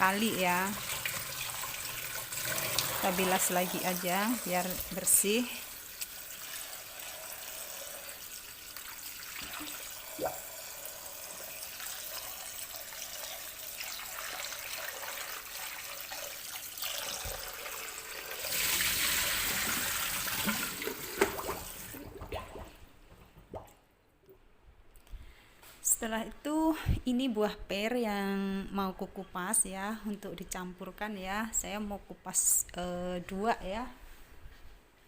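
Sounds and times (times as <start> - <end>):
water running and splashing: 0.5 - 22.8.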